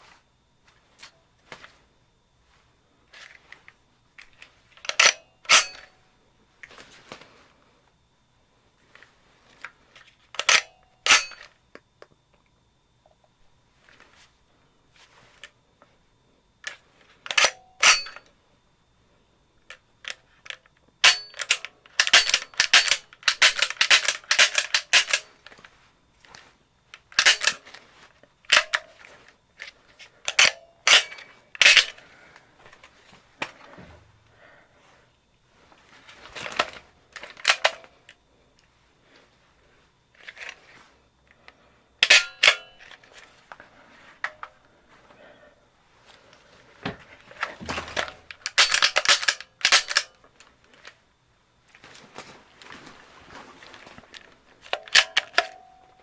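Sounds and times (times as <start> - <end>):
pistol metallic clicks and clacks: 4.8 - 5.9, 10.4 - 11.5, 17.3 - 18.3, 19.7 - 25.3, 27.0 - 27.6, 28.5 - 28.9, 30.2 - 32.0, 37.4 - 37.9, 42.0 - 42.8, 47.9 - 50.2, 54.7 - 55.7.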